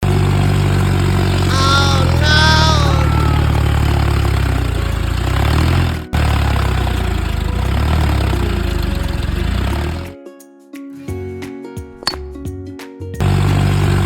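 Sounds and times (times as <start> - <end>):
small tractor engine puttering: 0.1 - 10.1.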